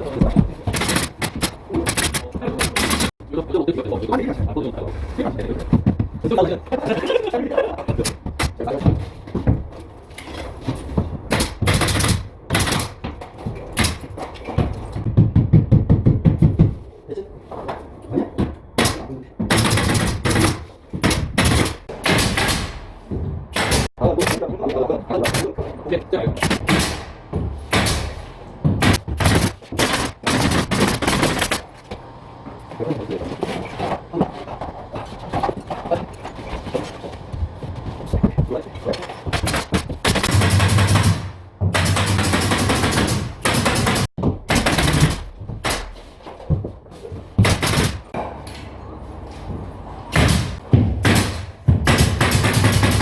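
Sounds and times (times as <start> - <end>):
sharp knocks and thuds: 0.0 - 3.2, 5.4 - 6.5, 7.8 - 16.9, 17.5 - 32.0, 36.5 - 48.5, 49.5 - 53.0
scattered clatter: 0.1 - 3.2, 28.8 - 31.9.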